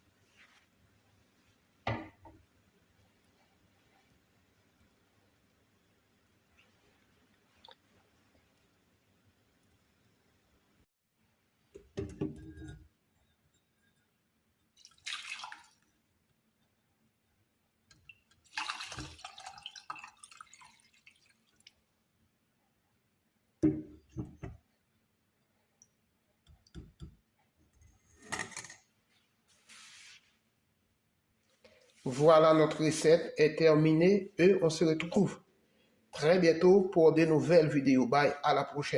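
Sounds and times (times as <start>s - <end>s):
liquid pouring and dripping: 14.6s - 16.8s, 17.8s - 21.9s.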